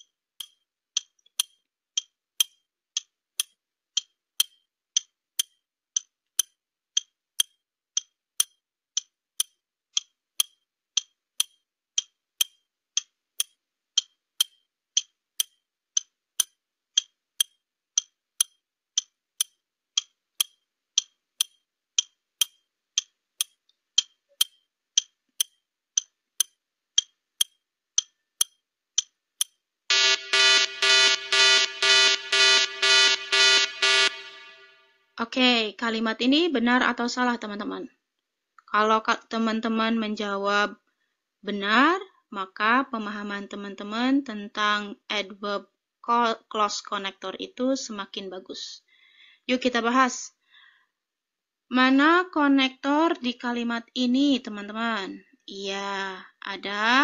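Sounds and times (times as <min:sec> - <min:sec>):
clock ticking: 0:00.0 - 0:34.7.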